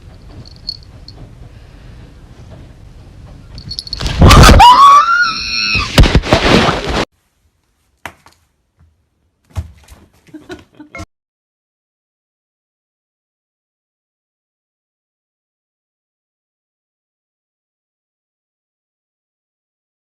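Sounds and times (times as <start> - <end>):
person crying out: 4.2 - 5.9.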